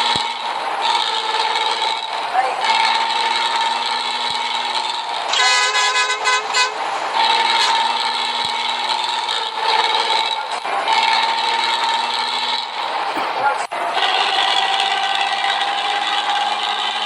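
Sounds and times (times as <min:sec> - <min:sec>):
diesel bus engine droning: 0:00.0 - 0:17.0
horn short blasts: 0:05.3 - 0:06.9, 0:07.6 - 0:07.9.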